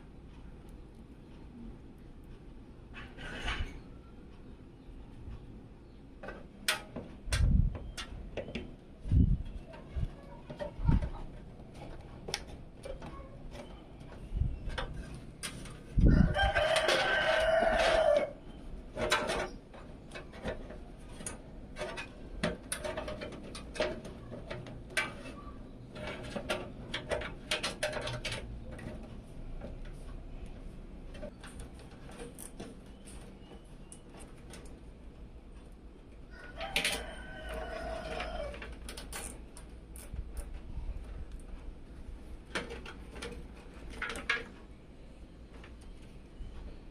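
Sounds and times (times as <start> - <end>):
rooster crowing: 16.0 - 18.4, 36.3 - 38.7.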